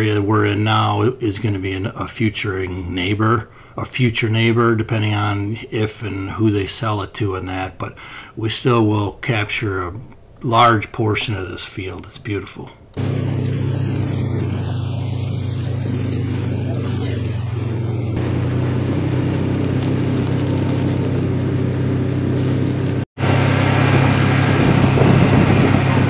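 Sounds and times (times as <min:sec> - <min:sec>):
rough noise: 0:13.0 - 0:26.0
vehicle engine running: 0:13.0 - 0:26.0.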